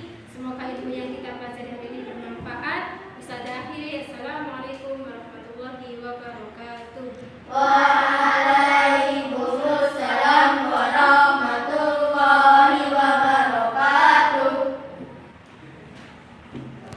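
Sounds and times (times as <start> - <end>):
children chanting in unison: 7.5 - 15.0.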